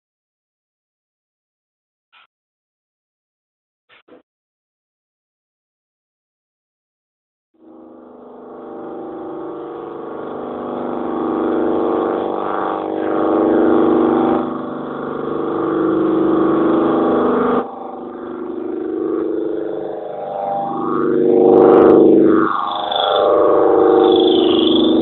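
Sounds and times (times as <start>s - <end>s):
synthesizer buzzy drone: 7.6s - 25.0s.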